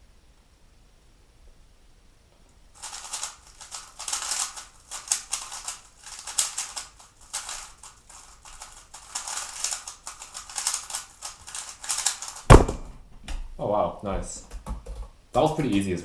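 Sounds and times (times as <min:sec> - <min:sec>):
plastic puzzle cube clacking: 0:02.8 - 0:12.6.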